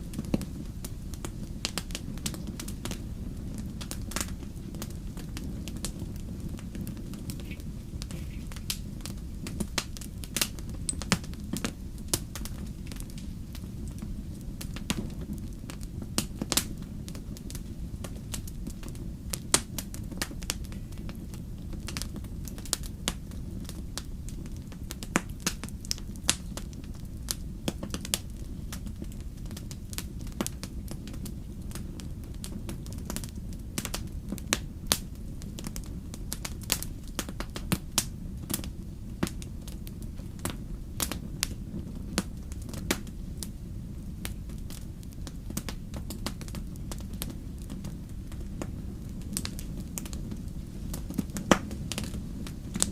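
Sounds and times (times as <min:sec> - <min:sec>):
wood fire crackling: 0:00.0 - 0:52.9.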